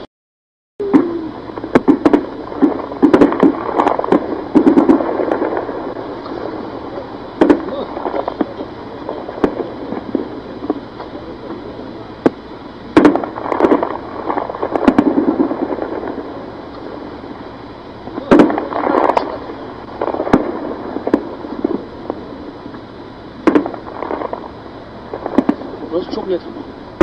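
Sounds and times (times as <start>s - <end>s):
gunshots with echo: 0.8s - 10.4s, 13.0s - 17.0s, 18.2s - 21.9s
faint distant gunshots: 0.8s - 17.4s, 18.1s - 22.8s, 23.4s - 26.5s.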